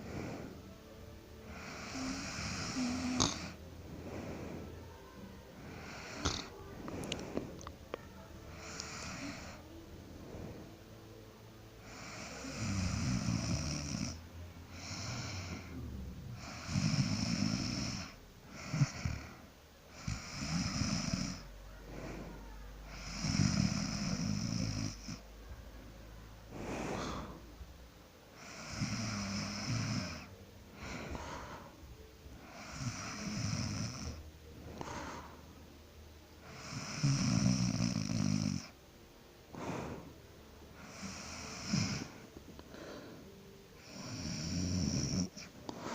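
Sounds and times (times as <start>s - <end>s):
soft breaths: 0.0s - 45.9s
person snoring: 1.5s - 7.7s, 8.5s - 9.6s, 11.8s - 25.2s, 26.5s - 27.5s, 28.4s - 31.8s, 32.4s - 35.5s, 36.4s - 38.8s, 40.8s - 45.9s.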